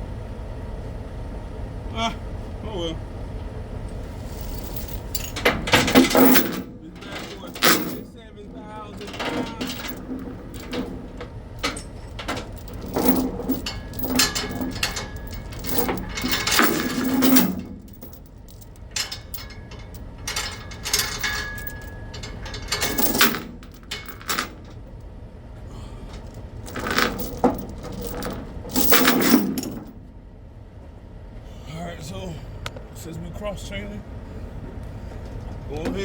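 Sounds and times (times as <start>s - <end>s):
metal chains clanking and rattling: 4.1s - 25.0s, 26.1s - 30.0s
metallic ringing: 4.3s - 24.8s.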